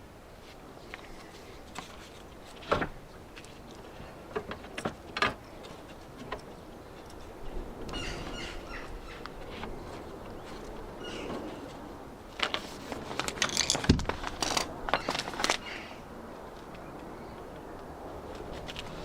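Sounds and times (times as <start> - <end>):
tools and metal parts clicking: 13.2 - 15.6.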